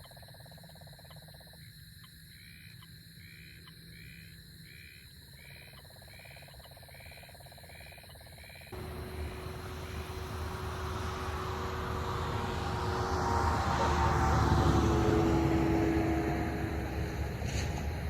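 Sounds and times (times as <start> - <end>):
pulsing trill: 8.8 - 17.2
steady hum: 8.8 - 17.4
steady high drone: 8.8 - 17.5
loud rushing noise: 8.8 - 18.0.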